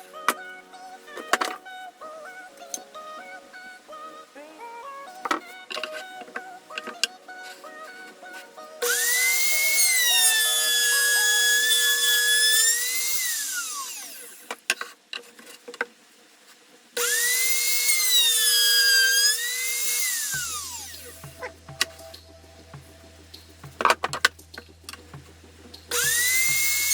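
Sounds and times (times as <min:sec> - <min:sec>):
power tool motor whining: 0:08.8 - 0:14.4, 0:17.0 - 0:21.4, 0:25.9 - 0:26.9.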